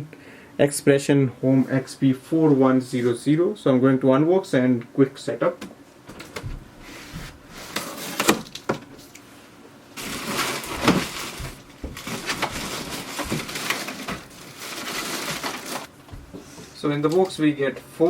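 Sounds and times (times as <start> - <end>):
packaging rustling: 10.0 - 17.3
cardboard box knocks and scrapes: 10.1 - 16.7.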